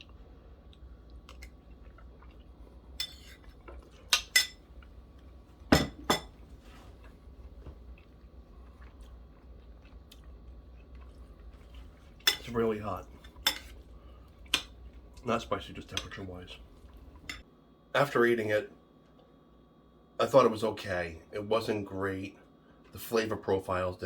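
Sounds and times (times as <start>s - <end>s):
cutlery clinking against dish: 3.0s - 3.4s, 4.1s - 4.6s, 12.3s - 12.6s, 13.4s - 13.7s.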